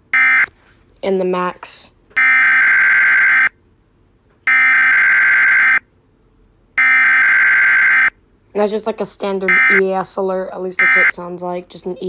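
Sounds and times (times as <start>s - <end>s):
loud electronic alert beeps: 2.2s - 3.5s, 4.5s - 5.8s, 6.8s - 8.1s, 9.5s - 9.8s, 10.8s - 11.1s.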